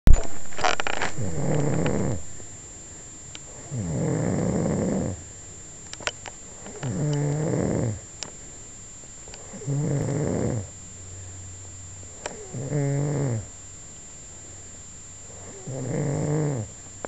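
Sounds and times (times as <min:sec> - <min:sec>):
person snoring: 0:01.1 - 0:02.2, 0:03.5 - 0:05.2, 0:06.9 - 0:08.0, 0:09.5 - 0:10.7, 0:12.3 - 0:13.5, 0:15.3 - 0:16.7.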